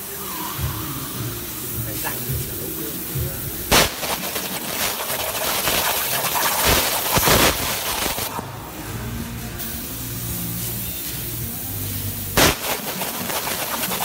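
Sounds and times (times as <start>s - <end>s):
plasma torch crackling hiss: 0.0s - 14.0s
plasma arc firing crack: 1.5s - 8.4s, 12.3s - 14.0s.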